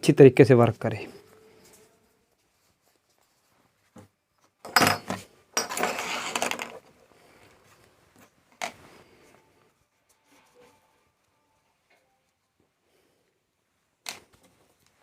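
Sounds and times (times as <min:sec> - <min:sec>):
scraping and rubbing metal: 0:05.6 - 0:06.7.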